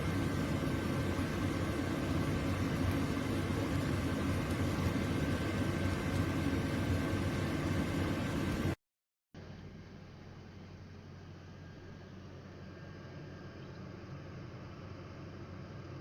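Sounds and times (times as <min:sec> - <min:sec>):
air fryer fan whirring: 0:00.0 - 0:08.8.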